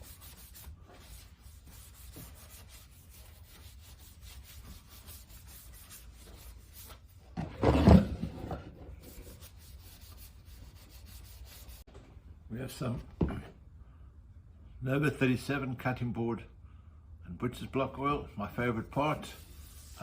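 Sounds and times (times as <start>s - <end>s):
rubbing strokes on wood: 0.0s - 7.2s, 8.9s - 11.9s, 19.2s - 20.0s.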